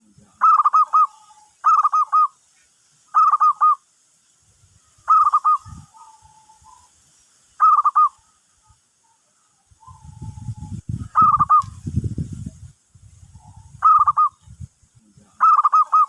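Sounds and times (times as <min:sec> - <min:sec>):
dove cooing: 0:00.0 - 0:02.4, 0:03.1 - 0:03.8, 0:05.1 - 0:06.9, 0:07.6 - 0:08.4, 0:09.8 - 0:11.8, 0:13.3 - 0:14.4, 0:15.4 - 0:16.0.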